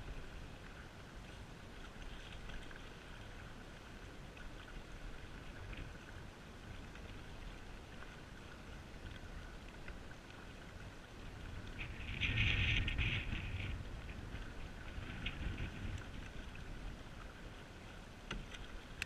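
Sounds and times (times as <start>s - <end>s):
paddle splashes and drips: 0.0s - 19.0s.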